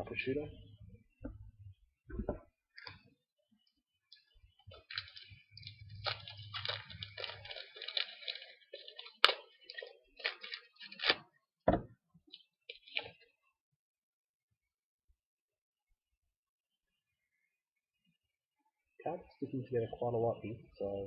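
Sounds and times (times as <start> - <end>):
foil wrapper crinkling and tearing: 4.1 - 11.4, 12.3 - 13.3.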